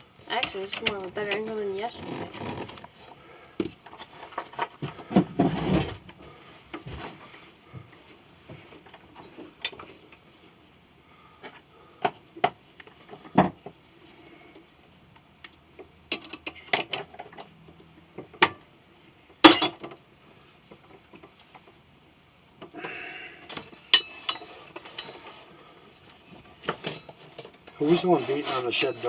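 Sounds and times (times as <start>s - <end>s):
knocks and clatter of hard objects: 3.6s - 6.2s
scraping: 27.8s - 29.0s.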